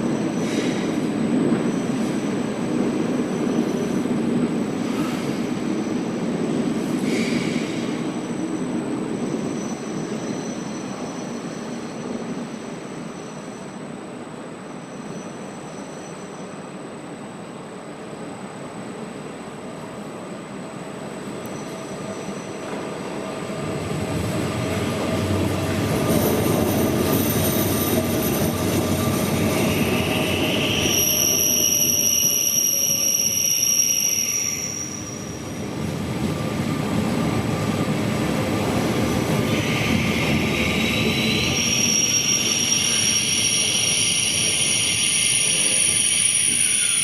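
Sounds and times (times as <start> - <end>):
train rolling rumble: 18.2 - 33.9, 34.6 - 47.0
brakes squealing: 39.1 - 47.0.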